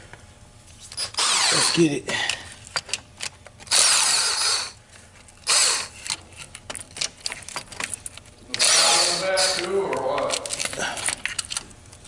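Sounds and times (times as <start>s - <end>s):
power tool spinning out bolts: 1.0s - 1.9s, 2.8s - 4.8s, 5.4s - 11.6s.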